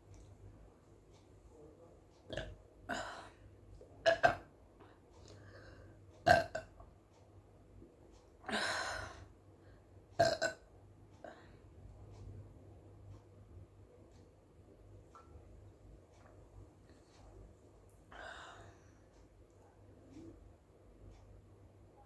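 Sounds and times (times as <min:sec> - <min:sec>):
woman burping: 0:02.3 - 0:03.3, 0:06.3 - 0:06.7, 0:10.2 - 0:10.6.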